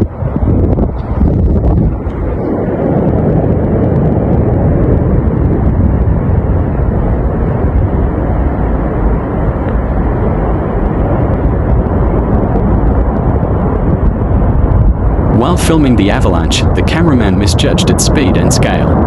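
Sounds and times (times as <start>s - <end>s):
avalanche deep rumble: 0.0s - 19.0s.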